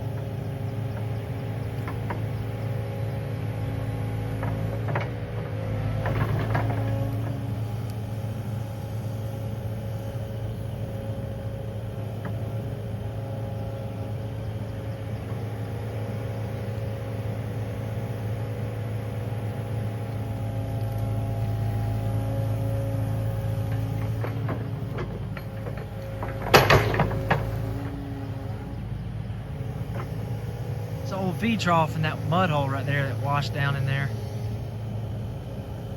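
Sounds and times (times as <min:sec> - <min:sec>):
excavator diesel engine running: 0:00.0 - 0:35.9
loud knocks: 0:24.4 - 0:28.0.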